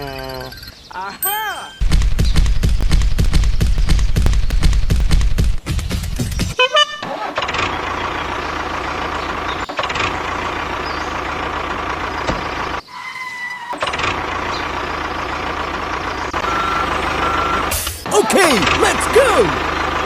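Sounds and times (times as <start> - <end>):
heavy vehicle engine running: 7.1 - 12.9, 13.7 - 20.0
reversing beep: 16.4 - 17.8.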